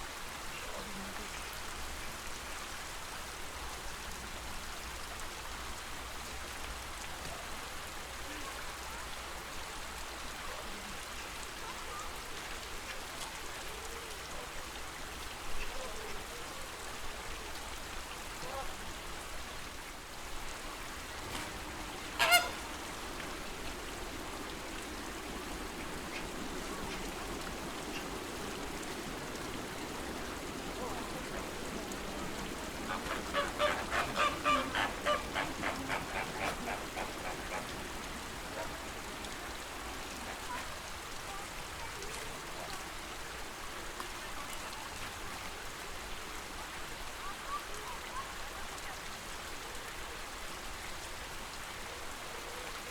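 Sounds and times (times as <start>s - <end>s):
lake water hiss: 16.5s - 43.0s
flamingos honking: 20.9s - 40.8s.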